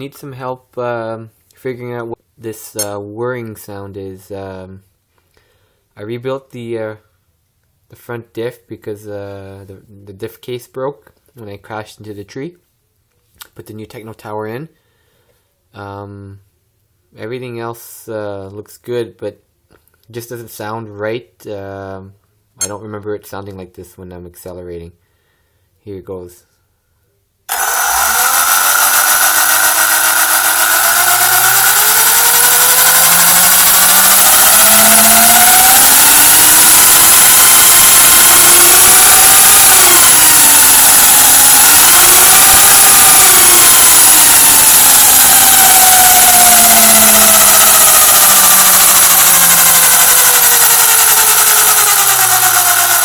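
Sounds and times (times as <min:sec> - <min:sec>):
rc car drivetrain whirring: 0:27.5 - 0:53.0.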